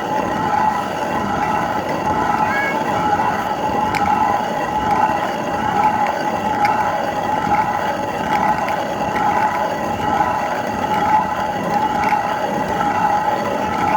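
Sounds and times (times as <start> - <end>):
stone grinder milling: 0.0 - 13.9.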